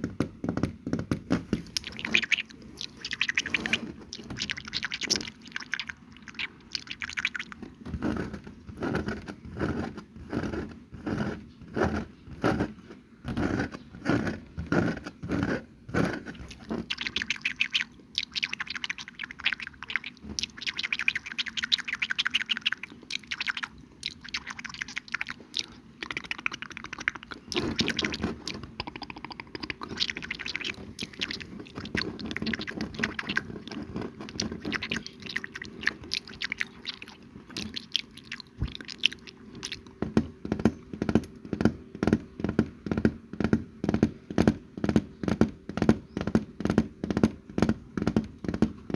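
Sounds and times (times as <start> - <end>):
fast crackling mouth clicks: 1.6 - 7.7, 16.3 - 40.0
chewing-like mouth sounds: 1.6 - 8.2, 16.3 - 40.0.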